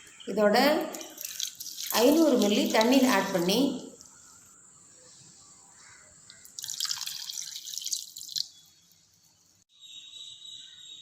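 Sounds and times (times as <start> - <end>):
water pouring into a vessel: 0.8 - 3.5, 6.4 - 8.6.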